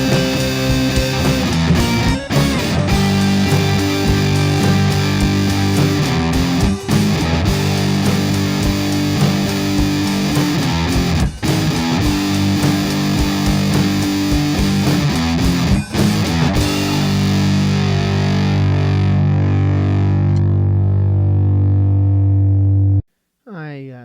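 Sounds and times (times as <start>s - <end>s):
distorted electric guitar: 0.0s - 23.0s.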